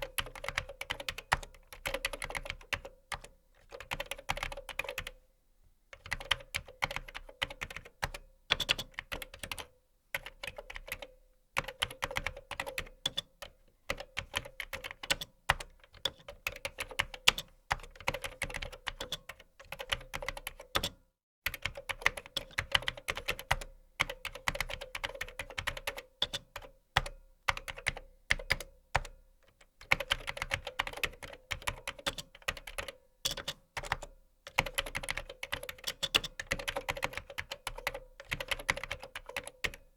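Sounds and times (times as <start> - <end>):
computer keyboard typing: 0.0 - 5.2, 6.0 - 39.9.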